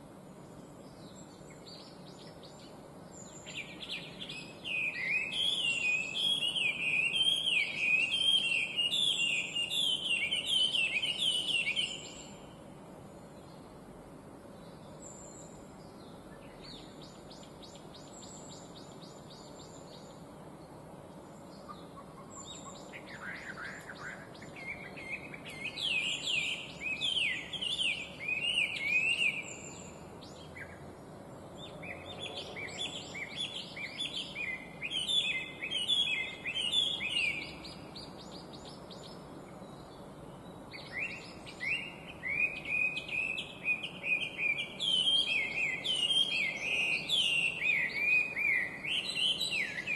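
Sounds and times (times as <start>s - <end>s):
bird singing whistled phrases: 3.3s - 12.4s, 22.3s - 30.8s, 31.8s - 37.8s, 40.7s - 49.9s.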